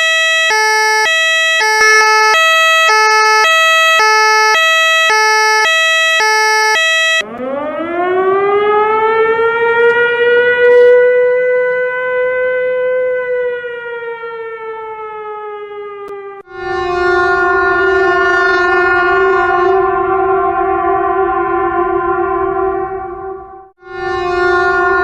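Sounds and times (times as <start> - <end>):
mechanical wind-up siren: 0.0 - 7.2
two-tone emergency siren: 0.0 - 25.0.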